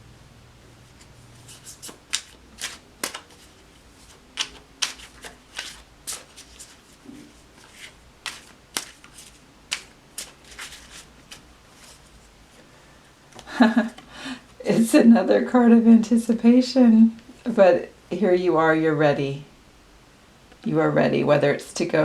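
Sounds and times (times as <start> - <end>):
cards being shuffled: 1.0 - 12.3.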